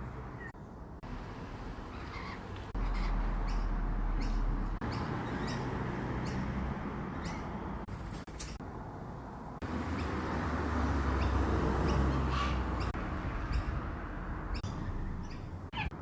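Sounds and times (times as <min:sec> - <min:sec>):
lorikeet chirping: 0:01.9 - 0:06.5, 0:07.2 - 0:07.6, 0:11.1 - 0:13.9, 0:14.5 - 0:16.0.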